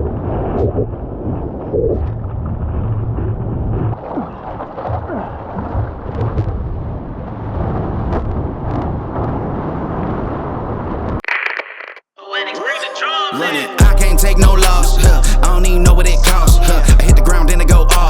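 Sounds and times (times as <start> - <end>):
wind rumbling on microphone: 0.0 - 11.2
scattered crackles: 0.0 - 12.1.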